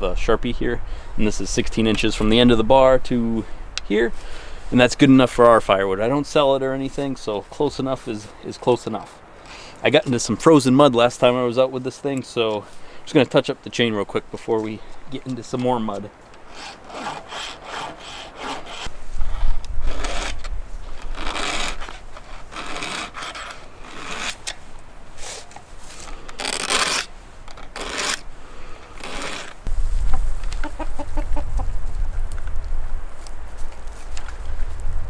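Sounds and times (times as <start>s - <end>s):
file rasping on saw chain: 16.5s - 18.9s, 21.0s - 24.5s
hen clucking: 30.5s - 31.8s.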